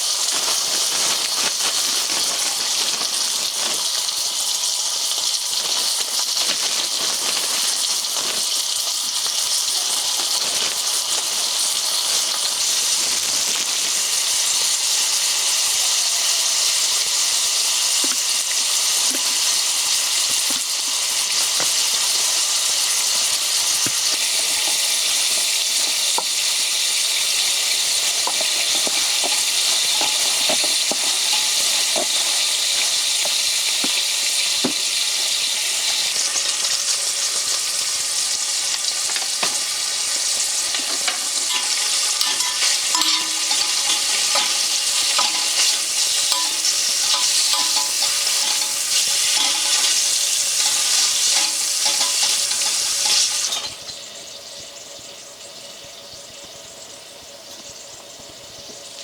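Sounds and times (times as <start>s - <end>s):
food sizzling in a frying pan: 0.0s - 59.0s
utensil scraping a pan: 17.7s - 26.6s, 27.7s - 36.0s, 38.8s - 54.0s.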